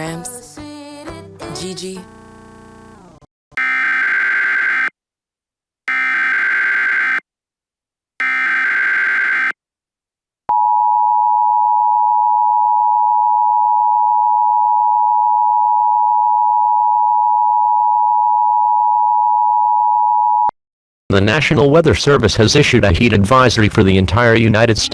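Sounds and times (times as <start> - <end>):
two-tone attention signal: 3.6 - 4.9, 5.9 - 7.2, 8.2 - 9.6.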